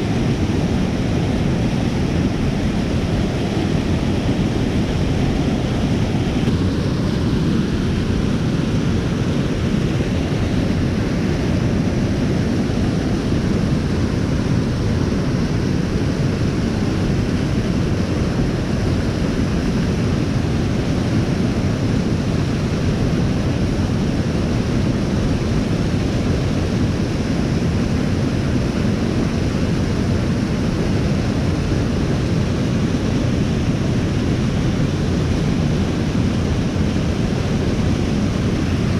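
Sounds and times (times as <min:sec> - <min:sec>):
waterfall rushing: 0:00.0 - 0:21.5.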